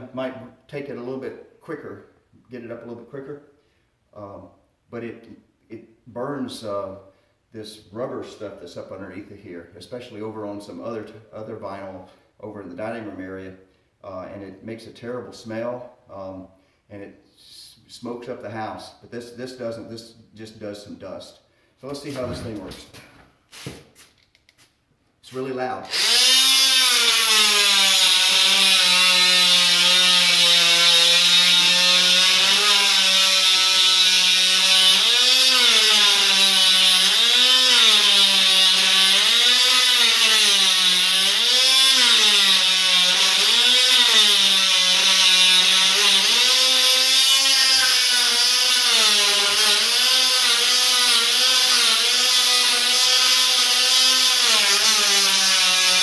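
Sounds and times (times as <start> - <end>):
oscillating multi-tool buzzing: 25.9 - 56.0.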